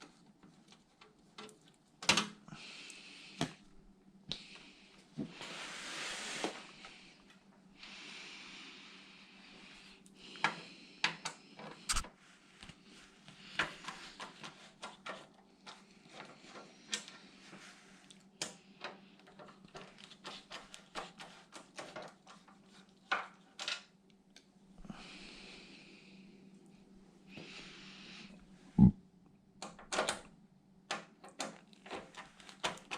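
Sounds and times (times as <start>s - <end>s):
low steady hum: 24.0s - 29.6s.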